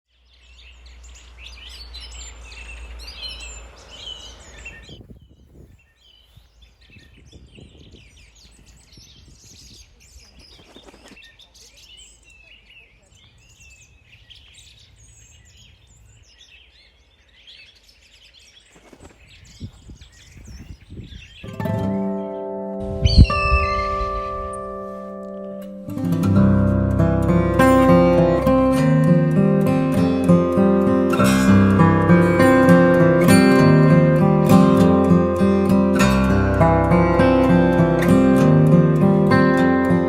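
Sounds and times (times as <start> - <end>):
small birds chirping: 0.1 - 40.0.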